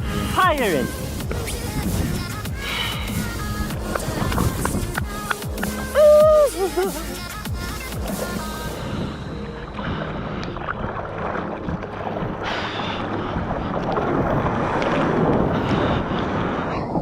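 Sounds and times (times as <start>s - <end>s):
wind noise on microphone: 0.0s - 6.6s, 13.1s - 17.0s
rushing water in surf: 0.0s - 17.0s.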